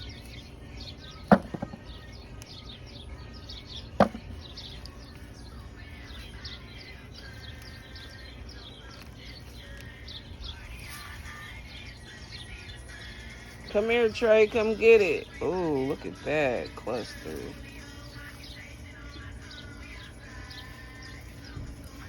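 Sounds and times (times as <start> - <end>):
small birds chirping: 0.0 - 22.0
potatoes knocking into container: 1.1 - 1.9, 4.0 - 4.4.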